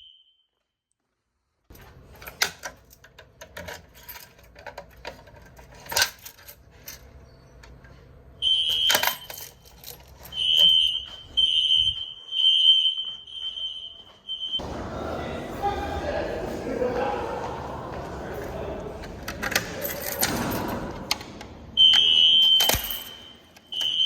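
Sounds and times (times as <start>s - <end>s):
fire alarm beeping: 0.0s - 0.5s, 8.4s - 16.0s, 21.7s - 24.0s.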